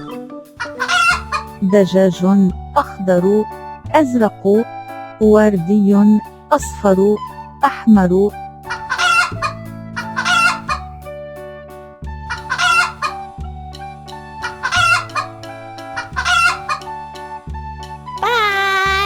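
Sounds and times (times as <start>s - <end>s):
chicken clucking and crowing: 0.0s - 1.5s, 8.7s - 10.8s, 12.3s - 13.2s, 14.4s - 15.3s, 16.0s - 16.8s
light children's music: 0.0s - 19.0s.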